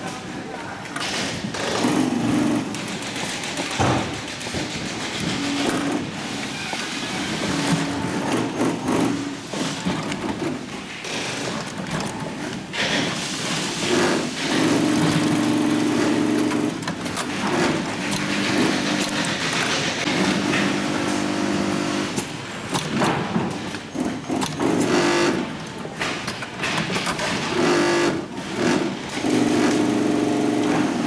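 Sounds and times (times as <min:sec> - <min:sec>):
sewing machine stitching: 0:01.0 - 0:31.0.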